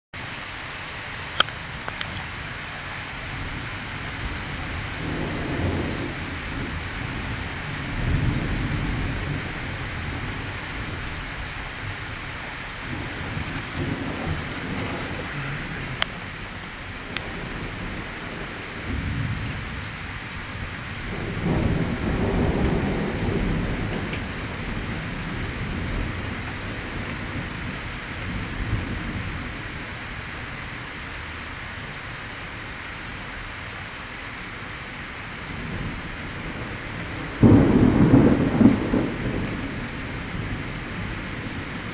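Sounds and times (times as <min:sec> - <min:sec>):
heavy rain hissing: 0:00.2 - 0:41.9
low rolls of thunder: 0:03.2 - 0:30.5, 0:35.4 - 0:41.9
loud thunderclap: 0:04.2 - 0:11.4, 0:12.8 - 0:29.6, 0:35.5 - 0:41.9.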